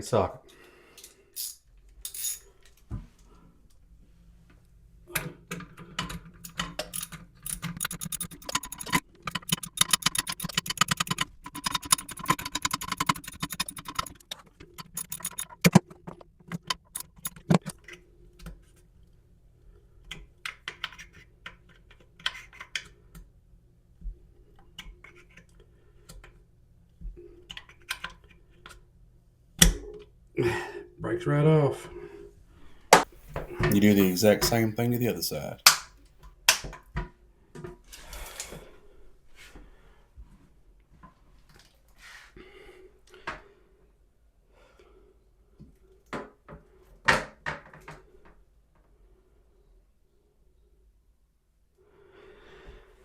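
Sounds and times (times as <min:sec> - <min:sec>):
ratchet wrench clicking: 0:06.8 - 0:15.8, 0:16.5 - 0:17.6.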